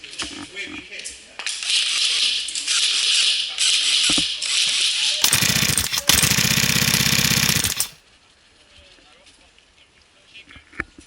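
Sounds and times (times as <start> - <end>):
fast mechanical rattle: 5.2 - 8.0
hissing bursts: 5.2 - 8.0.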